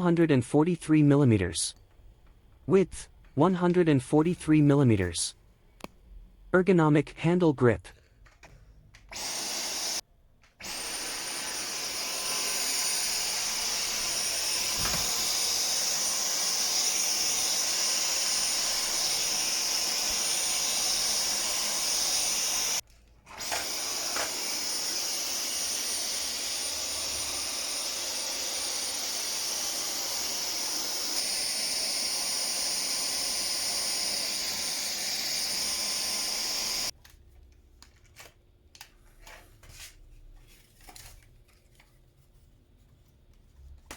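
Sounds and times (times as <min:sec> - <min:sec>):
cordless vacuum cleaner running: 0:09.1 - 0:10.0, 0:10.6 - 0:36.9.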